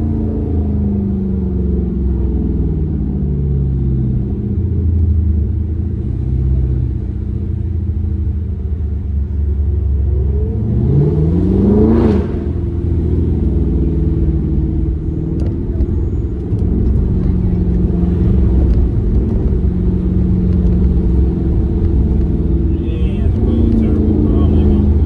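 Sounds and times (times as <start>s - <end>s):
car engine accelerating: 0.0s - 25.0s.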